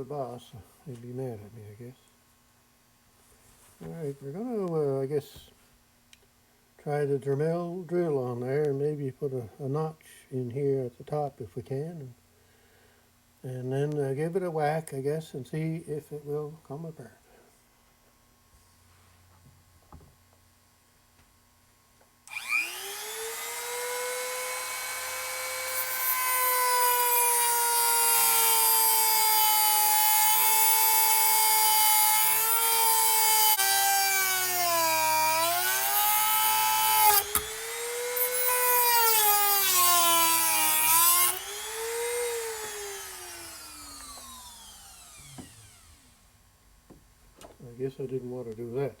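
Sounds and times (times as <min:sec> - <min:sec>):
rotary tool grinding steel: 0:22.3 - 0:46.1.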